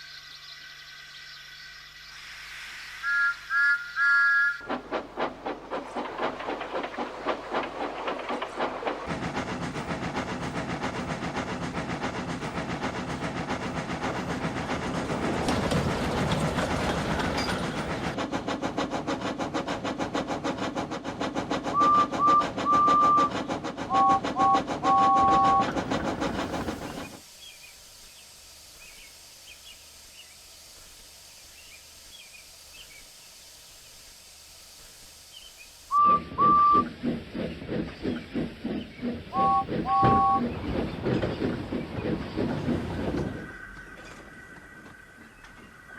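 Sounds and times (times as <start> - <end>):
steam locomotive chuffing: 2.9 - 45.9
steam whistle toots: 3.0 - 4.7, 21.7 - 25.7, 35.9 - 36.9, 39.3 - 40.5.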